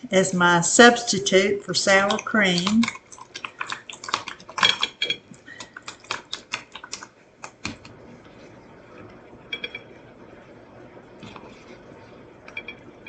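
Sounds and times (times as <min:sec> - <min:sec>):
utensil clicking and scraping a dish: 0:02.0 - 0:07.9.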